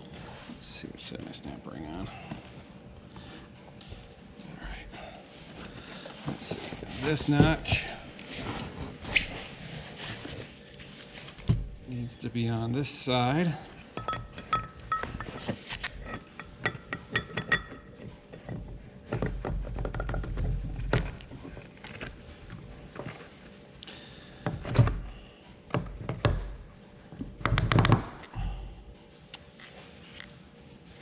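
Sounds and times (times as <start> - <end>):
metal engine parts clinking: 13.9 - 18.6.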